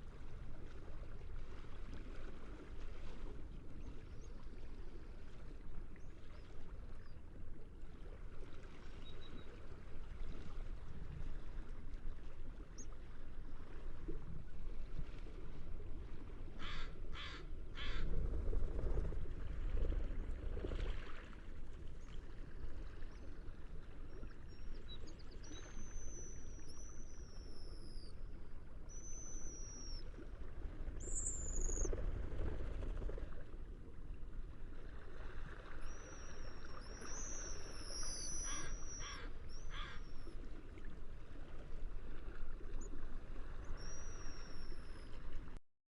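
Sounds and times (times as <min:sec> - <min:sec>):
sea noise: 0:00.0 - 0:45.6
wind: 0:00.0 - 0:45.6
birds' high falling whistles: 0:28.9 - 0:30.0, 0:35.8 - 0:39.7
seagull calling: 0:36.9 - 0:40.3.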